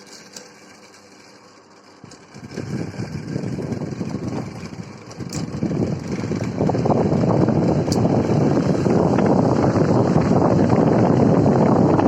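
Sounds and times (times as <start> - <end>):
faint motor hum: 0.0 - 12.0
fan air buffeting microphone: 0.0 - 12.0.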